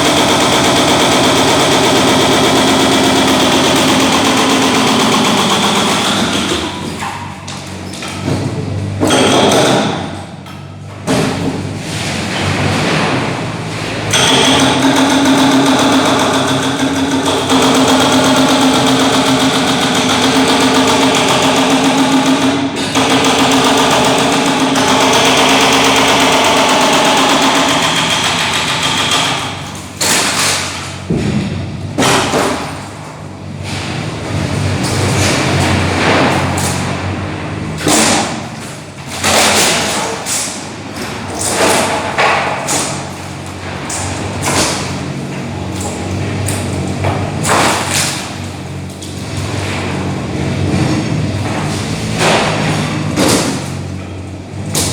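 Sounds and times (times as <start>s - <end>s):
heavy demolition thuds and knocks: 0.0s - 54.9s.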